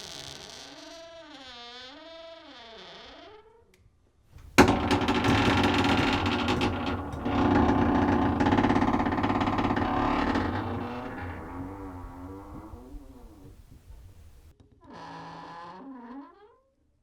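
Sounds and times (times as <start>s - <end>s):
door hinge creaking: 4.4s - 14.5s.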